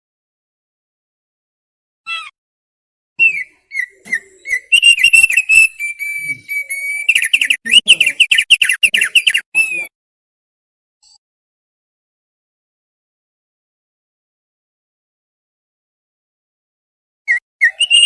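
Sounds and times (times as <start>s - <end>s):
bird whistling song: 3.2s - 9.9s, 17.3s - 18.0s.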